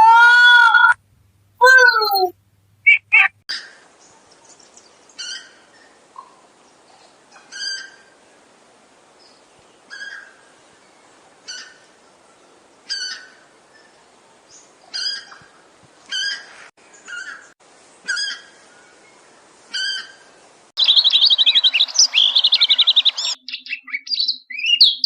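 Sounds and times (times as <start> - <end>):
faint steady hiss: 1.0 - 1.6, 2.3 - 2.9, 3.6 - 23.4
bird giving harsh call: 20.8 - 23.4.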